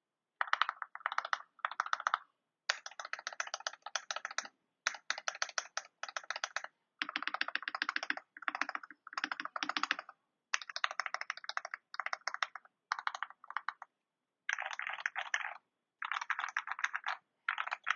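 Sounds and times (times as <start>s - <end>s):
mechanical keyboard typing: 0.4s - 13.9s, 14.5s - 17.9s.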